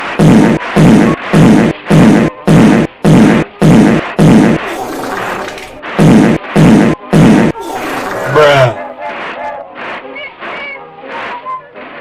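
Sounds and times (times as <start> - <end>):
loud distorted music bursts: 6.0 - 8.8.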